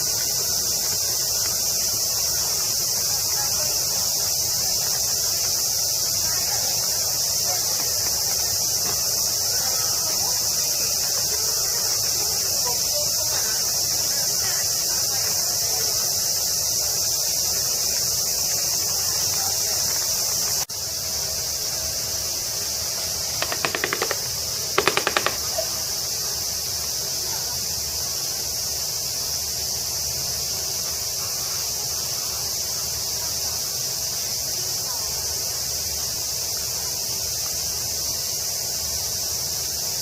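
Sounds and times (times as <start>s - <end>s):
cicada chorus: 0.0s - 40.0s
rapid clattering clicks: 23.4s - 25.6s.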